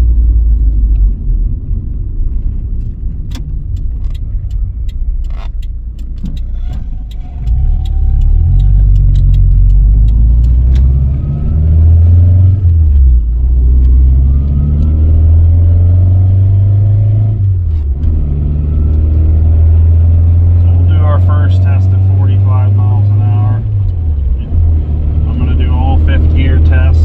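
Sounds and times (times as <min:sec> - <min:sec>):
car engine accelerating: 0:00.0 - 0:27.0
light ticking: 0:02.8 - 0:13.1.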